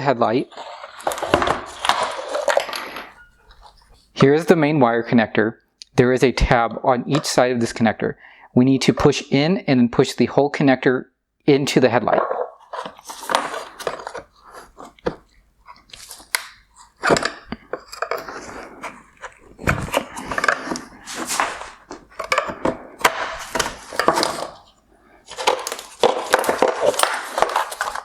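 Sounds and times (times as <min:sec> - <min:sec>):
plastic housing being handled: 0:00.4 - 0:04.1, 0:12.1 - 0:28.0
plastic connector clicking: 0:15.9 - 0:17.4.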